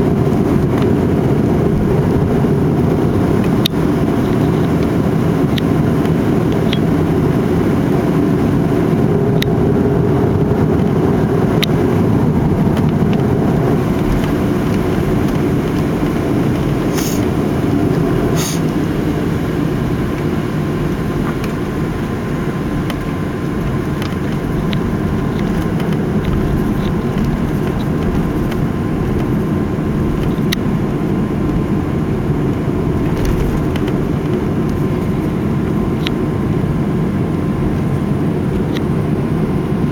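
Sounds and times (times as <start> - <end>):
jet engines rumbling in cabin: 0.0 - 39.9
short hissy bursts: 16.9 - 17.3, 18.3 - 18.7.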